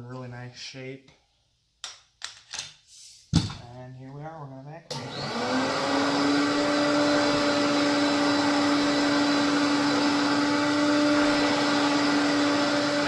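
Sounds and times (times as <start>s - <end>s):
vacuum cleaner running: 4.9s - 13.0s.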